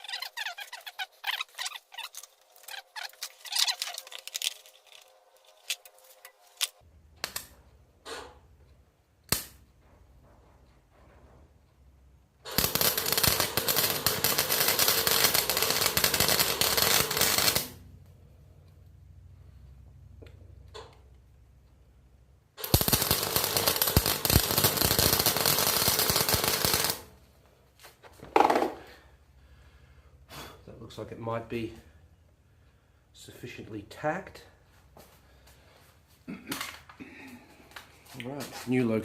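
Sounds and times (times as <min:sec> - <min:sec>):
arc welder crackling: 0:12.4 - 0:17.9, 0:22.6 - 0:27.2.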